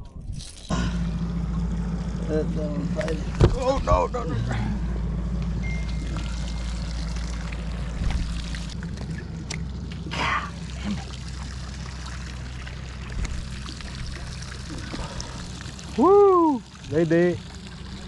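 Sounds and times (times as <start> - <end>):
steady low hum: 0.0 - 18.0
water pouring and trickling: 0.3 - 0.7, 5.6 - 18.0
water splash: 5.8 - 18.0.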